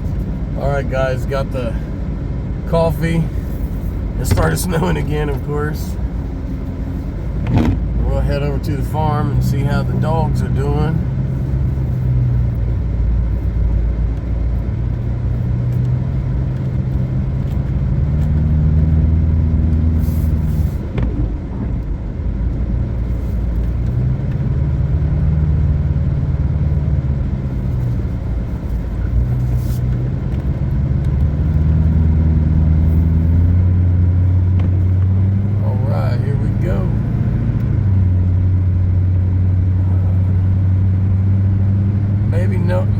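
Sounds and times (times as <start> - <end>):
road rumble: 0.0 - 42.9
vehicle engine accelerating: 0.0 - 42.9.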